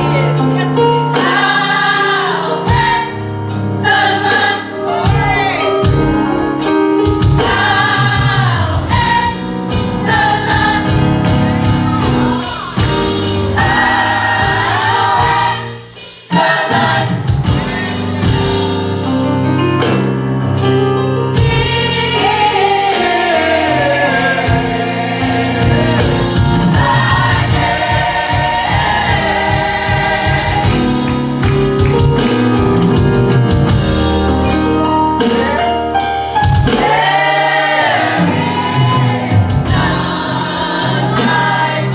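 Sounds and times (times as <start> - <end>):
choir singing: 0.0 - 5.6, 7.4 - 18.3, 21.4 - 31.8, 36.6 - 41.9
instrumental accompaniment: 0.0 - 41.9.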